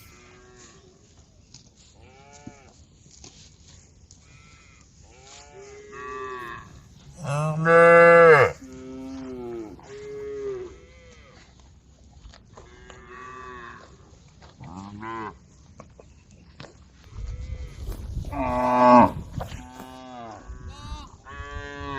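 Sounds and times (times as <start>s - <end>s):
cows mooing: 5.2s - 11.2s, 18.3s - 21.9s.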